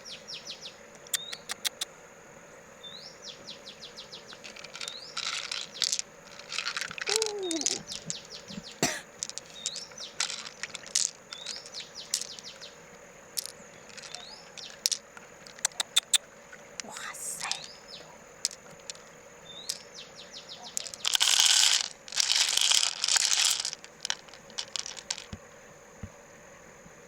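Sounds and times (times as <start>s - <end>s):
sharp clicks: 15.5s - 16.2s.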